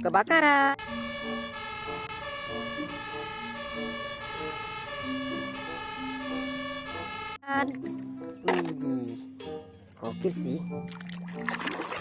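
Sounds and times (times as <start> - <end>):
fire engine siren wailing: 0.8 - 7.5.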